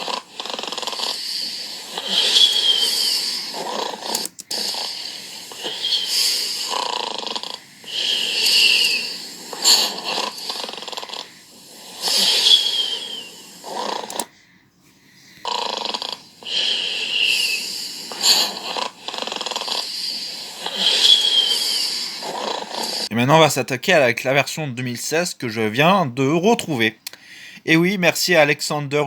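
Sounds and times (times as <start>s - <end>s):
cartoon snoring with whistle: 0.0s - 14.3s, 15.4s - 23.2s.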